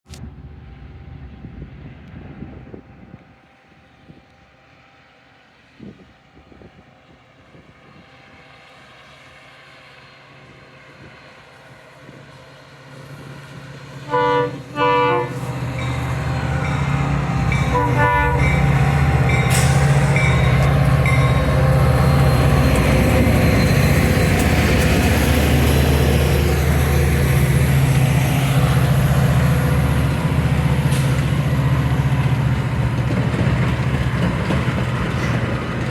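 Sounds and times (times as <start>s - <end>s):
diesel train rumble: 7.4s - 35.9s
train wheel noise: 11.7s - 35.9s
train horn blasts: 14.0s - 25.8s.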